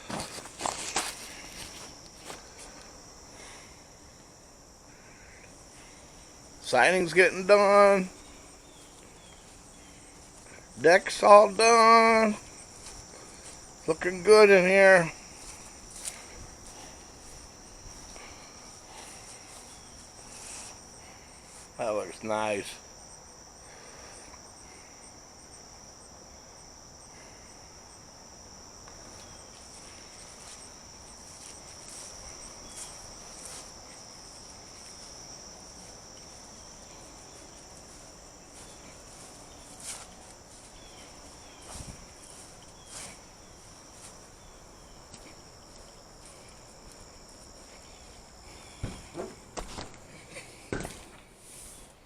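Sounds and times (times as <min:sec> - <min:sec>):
high-pitched insect chorus: 0:00.0 - 0:52.0
faint knocks: 0:48.8 - 0:50.0.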